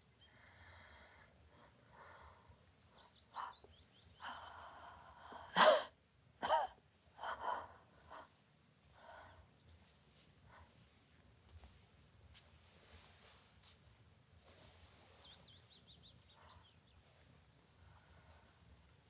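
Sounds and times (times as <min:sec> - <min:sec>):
woman coughing: 0:05.6 - 0:06.8.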